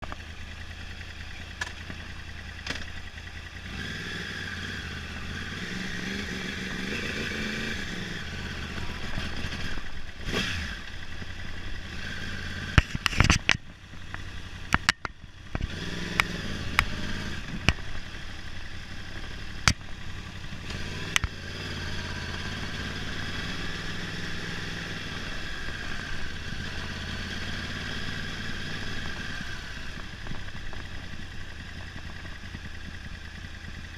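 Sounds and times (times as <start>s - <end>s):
motorcycle engine running unevenly: 0.0s - 33.9s
engine sharp pops: 1.6s - 3.0s, 12.7s - 17.9s, 19.5s - 21.4s.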